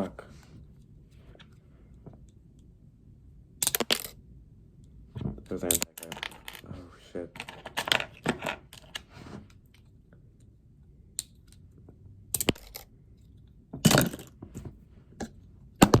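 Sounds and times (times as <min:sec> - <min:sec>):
plastic bricks clicking and clattering: 0:03.6 - 0:04.2, 0:05.6 - 0:06.7, 0:07.3 - 0:09.0, 0:12.3 - 0:12.9, 0:13.8 - 0:16.0.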